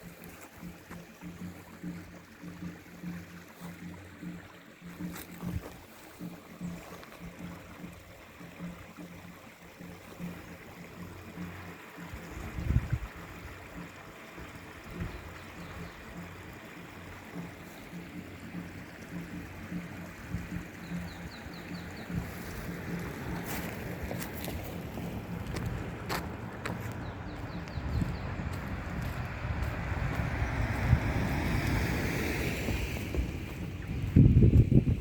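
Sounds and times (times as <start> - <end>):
mountain stream babbling: 0.0 - 35.0
low bumps: 12.3 - 35.0.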